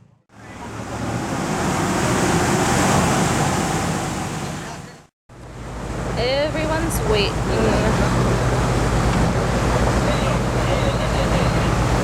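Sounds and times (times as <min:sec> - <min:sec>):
low engine hum: 0:00.0 - 0:12.0.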